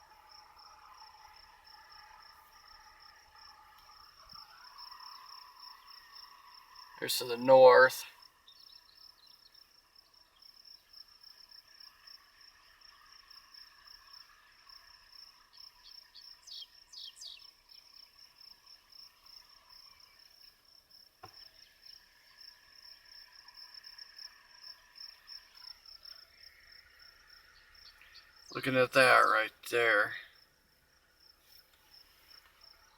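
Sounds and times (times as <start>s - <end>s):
bird chirps: 15.8s - 18.0s.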